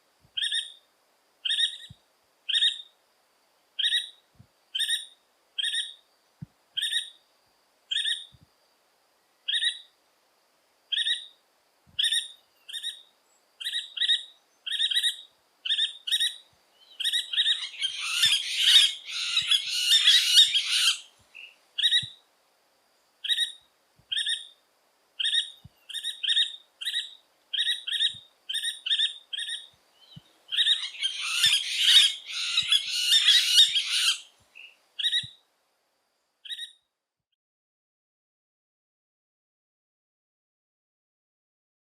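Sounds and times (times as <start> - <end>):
woodpecker calling sharp notes: 17.0 - 21.1, 25.2 - 29.7, 30.5 - 34.3.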